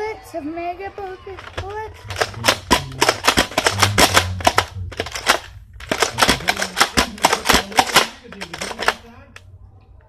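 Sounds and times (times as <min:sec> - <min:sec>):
plastic toy blaster clicks: 0:01.4 - 0:09.1.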